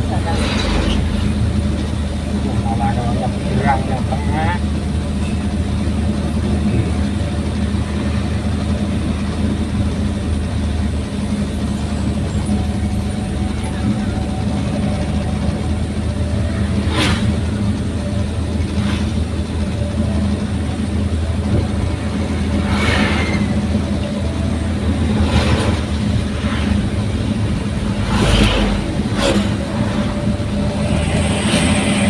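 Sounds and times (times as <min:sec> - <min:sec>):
pickup engine droning: 0:00.0 - 0:32.0.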